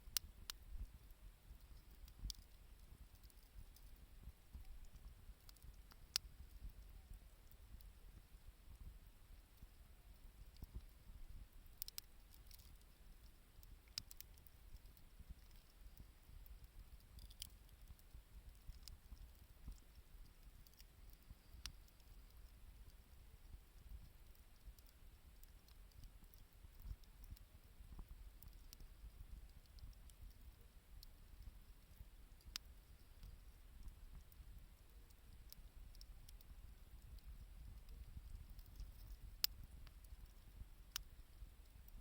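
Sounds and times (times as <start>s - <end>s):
wood fire crackling: 0.0s - 42.0s
burning wood snapping: 13.9s - 15.6s.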